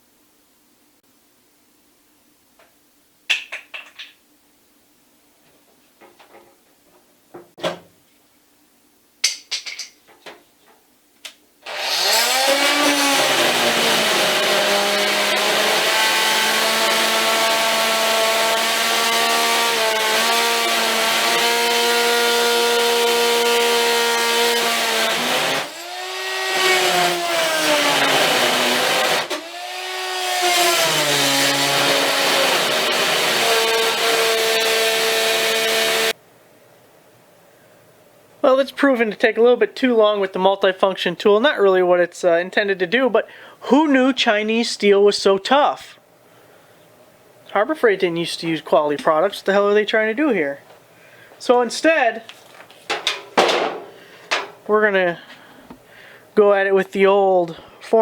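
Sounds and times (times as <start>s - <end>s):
multi-tool cutting steel: 11.6s - 36.2s
clicks and knocks: 52.8s - 54.6s.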